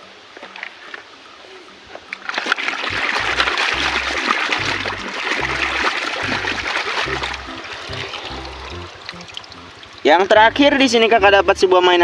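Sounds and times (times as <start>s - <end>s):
running water splashing: 2.2s - 10.1s.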